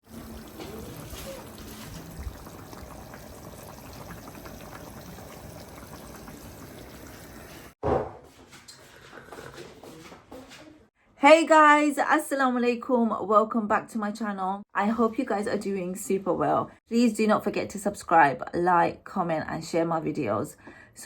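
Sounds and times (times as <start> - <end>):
running water: 0.0 - 7.8.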